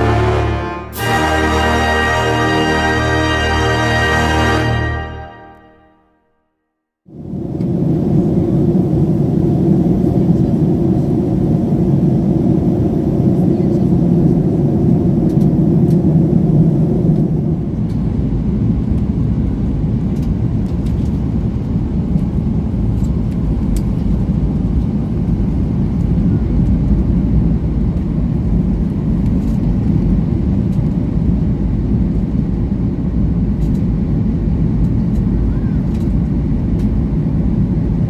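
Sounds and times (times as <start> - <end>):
airplane cabin engine rumble: 0.0 - 5.6, 7.1 - 38.0.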